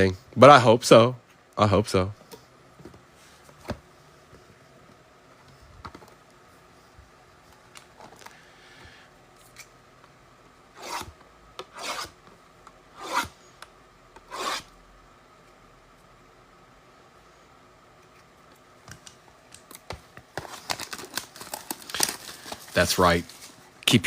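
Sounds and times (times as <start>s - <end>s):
packaging rustling: 20.3s - 23.6s
packaging ripping: 20.4s - 23.0s.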